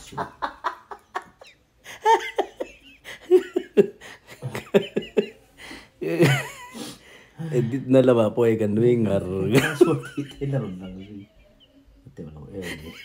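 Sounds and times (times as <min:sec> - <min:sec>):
person laughing: 0:06.0 - 0:06.9.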